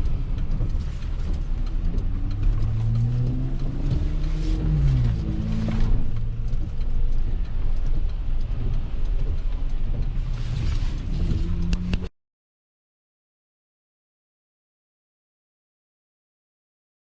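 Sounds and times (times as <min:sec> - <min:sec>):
road noise: 0:00.0 - 0:12.1
truck engine hum: 0:00.0 - 0:12.1.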